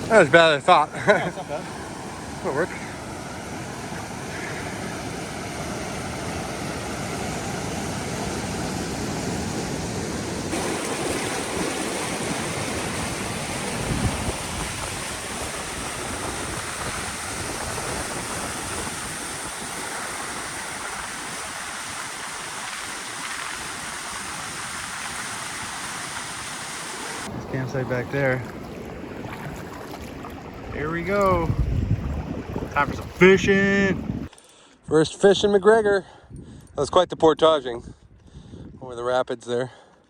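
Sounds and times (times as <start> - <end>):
river rapids rushing: 1.2 - 27.8.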